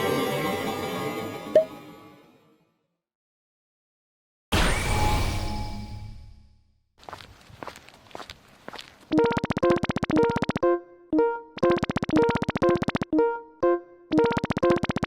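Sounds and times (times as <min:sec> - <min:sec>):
synthesizer music: 0:09.1 - 0:15.0.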